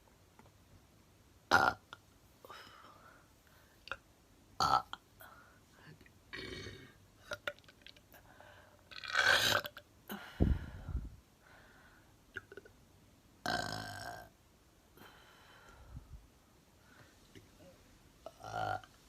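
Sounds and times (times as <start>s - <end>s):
woman burping: 6.4s - 7.6s.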